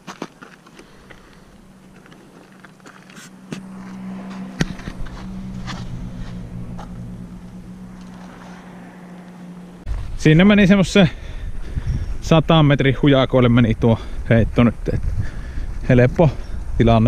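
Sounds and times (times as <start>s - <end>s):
low motor hum: 0.8s - 10.6s.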